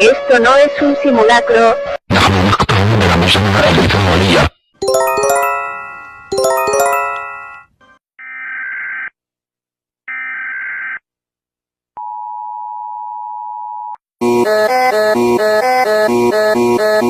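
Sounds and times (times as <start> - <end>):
steady alert tone: 4.8 - 7.6.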